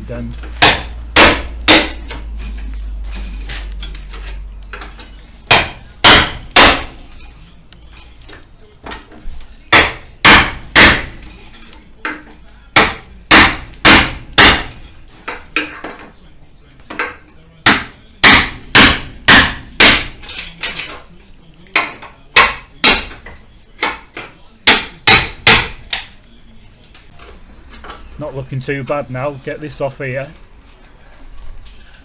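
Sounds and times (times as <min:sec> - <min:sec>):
mallet hammering chisel on metal: 0:00.6 - 0:02.3, 0:04.8 - 0:07.1, 0:09.7 - 0:11.3, 0:12.1 - 0:15.8, 0:17.0 - 0:20.9, 0:21.8 - 0:26.1.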